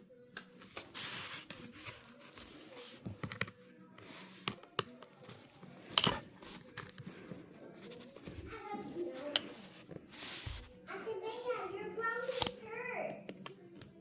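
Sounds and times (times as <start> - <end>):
scraping and rustling: 0.6 - 11.2.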